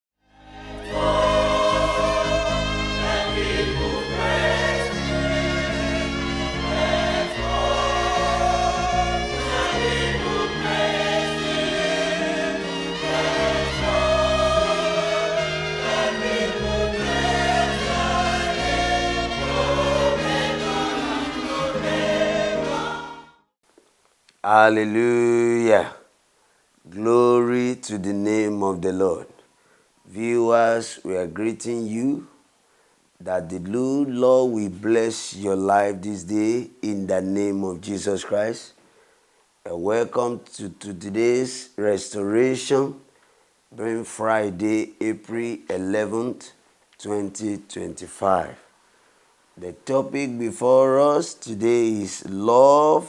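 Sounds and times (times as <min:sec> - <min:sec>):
sustained instrumental chords: 0:00.3 - 0:23.3
gospel choir singing: 0:00.3 - 0:23.4, 0:49.6 - 0:53.0.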